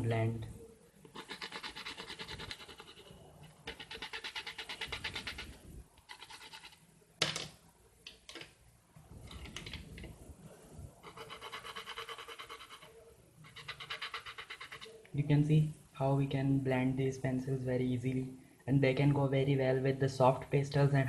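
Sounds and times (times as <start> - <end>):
pencils rubbing on paper: 1.1 - 6.8, 11.0 - 15.1.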